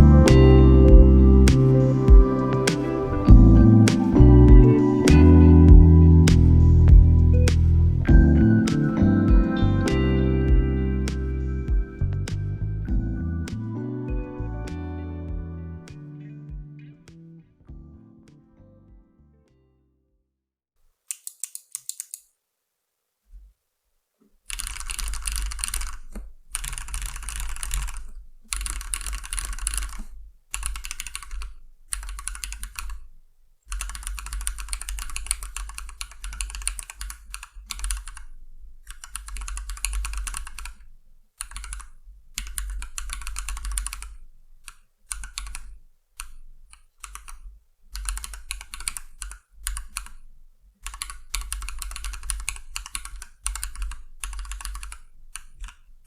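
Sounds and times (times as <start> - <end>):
mechanical keyboard typing: 21.1 - 22.2, 24.5 - 33.0, 33.7 - 40.8, 41.4 - 50.2, 50.8 - 55.9.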